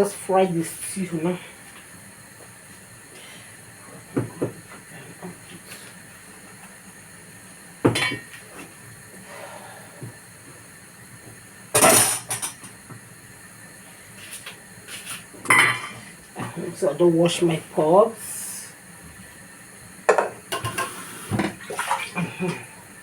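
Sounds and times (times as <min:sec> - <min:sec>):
pots and utensils clattering: 0:07.9 - 0:08.3, 0:11.8 - 0:12.8, 0:15.4 - 0:16.1, 0:20.1 - 0:22.6.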